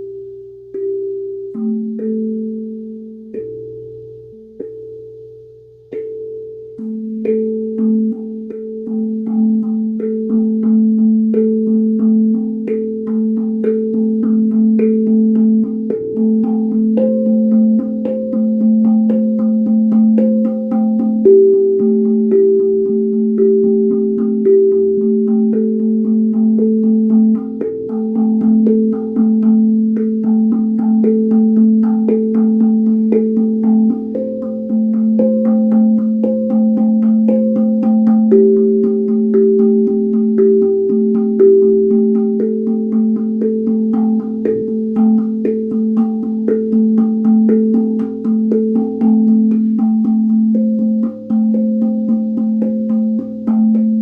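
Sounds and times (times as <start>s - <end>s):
steel tongue drum notes ringing: 0.0s - 54.0s.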